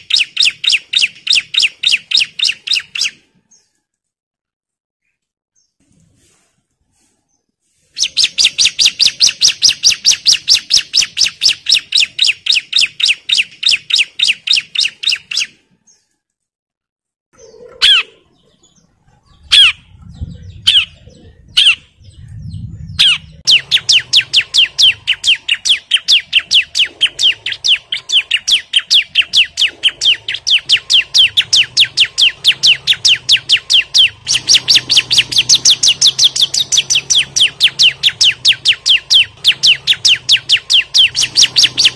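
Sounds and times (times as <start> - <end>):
bird calling sharp high notes: 23.1 - 41.9.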